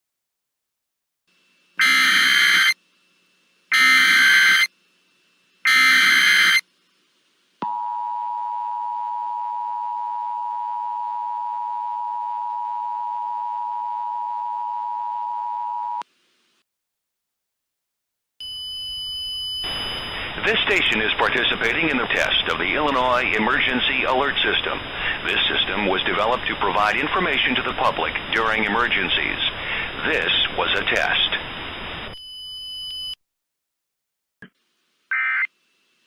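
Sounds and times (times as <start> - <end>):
harsh digital data bursts: 1.8 - 2.8, 3.7 - 4.8, 5.6 - 6.7
steady two-tone attention signal: 1.8 - 2.8, 3.7 - 4.7, 5.7 - 6.6.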